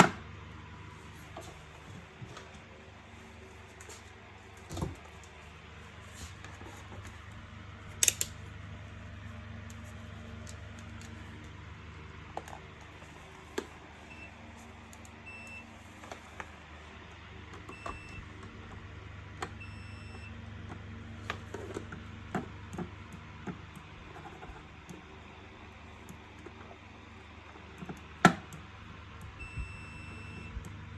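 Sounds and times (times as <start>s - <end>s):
steady low hum: 0.1s - 30.9s
handling clicks: 8.0s - 8.4s.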